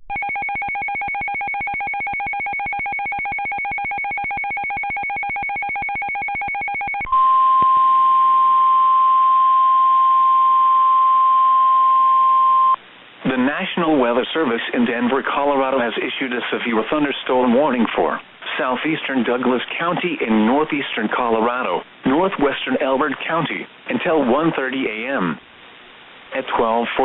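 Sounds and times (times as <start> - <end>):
rapid pulsing electronic beeping: 0.1 - 7.1
steady warning alarm tone: 0.1 - 12.8.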